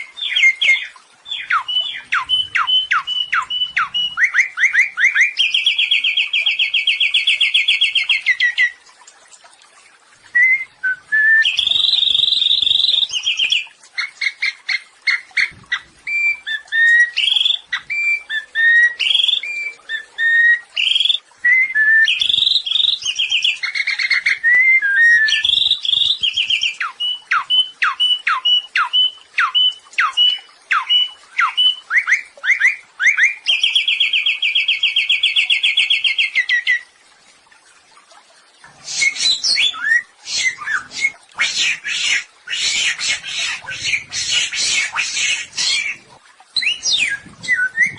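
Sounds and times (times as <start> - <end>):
songbird singing trilled notes: 0.0 - 8.8, 42.1 - 47.9.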